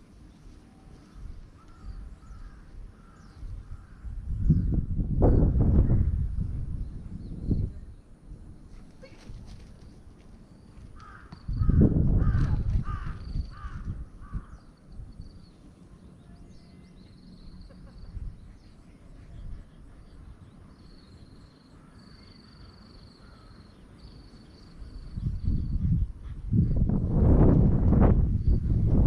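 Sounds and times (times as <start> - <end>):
low rumbling wind: 0.0 - 29.0
crow cawing: 11.0 - 14.6.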